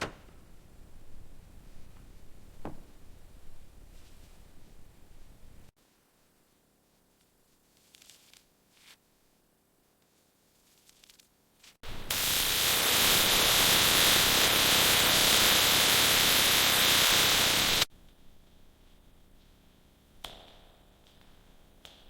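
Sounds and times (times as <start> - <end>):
loud spraying hiss: 11.8 - 17.9.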